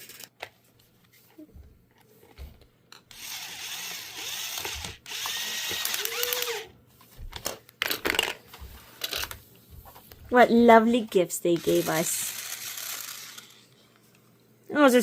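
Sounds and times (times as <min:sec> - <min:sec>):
toy power tool whirring: 0:03.1 - 0:06.7, 0:11.5 - 0:13.7.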